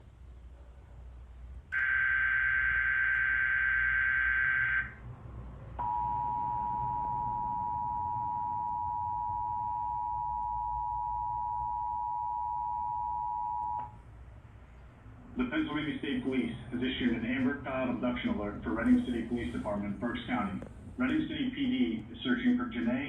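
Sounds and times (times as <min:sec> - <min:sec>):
two-tone attention signal: 0:05.8 - 0:13.9.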